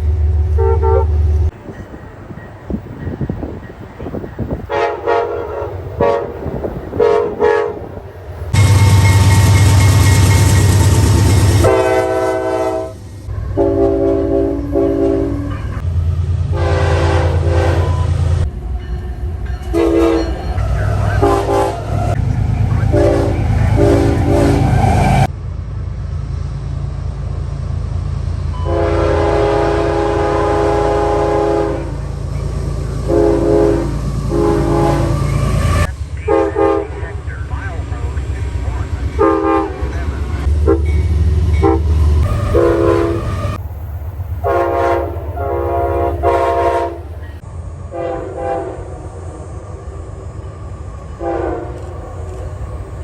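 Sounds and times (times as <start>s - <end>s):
train passing roar: 0.0s - 53.0s
train rumble: 0.0s - 53.0s
locomotive air horn blasts: 0.6s - 1.3s, 4.7s - 7.9s, 8.6s - 15.8s, 16.5s - 18.2s, 19.7s - 25.2s, 28.6s - 32.1s, 33.0s - 37.2s, 39.1s - 43.6s, 44.4s - 47.2s, 47.9s - 48.9s, 51.2s - 51.9s.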